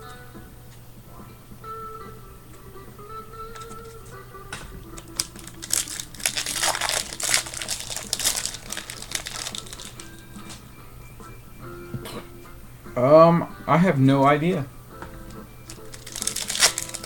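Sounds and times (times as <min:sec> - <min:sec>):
wrapper crinkling and rustling: 0:03.5 - 0:04.2, 0:04.8 - 0:10.6, 0:15.6 - 0:17.0.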